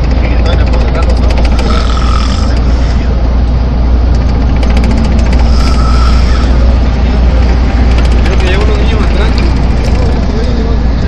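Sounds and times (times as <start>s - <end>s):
moving vehicle rumble: 0.0s - 11.0s
person snoring: 1.6s - 2.6s, 5.5s - 6.6s.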